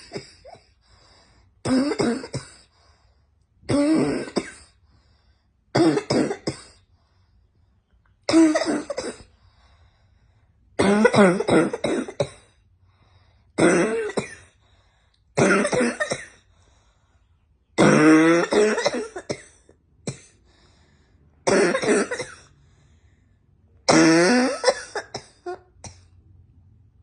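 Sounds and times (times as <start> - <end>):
person coughing: 0.0 - 0.8, 1.6 - 2.7, 3.6 - 4.8, 5.8 - 6.8, 8.3 - 9.3, 10.8 - 12.6, 13.6 - 14.6, 15.4 - 16.5, 17.8 - 20.4, 21.5 - 22.5, 23.9 - 26.2.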